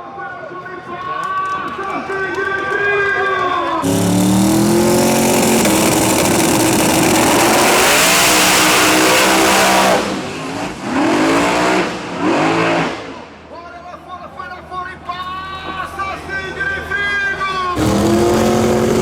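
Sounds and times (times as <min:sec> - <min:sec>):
drag car engine revving: 0:03.8 - 0:13.3, 0:17.3 - 0:19.0.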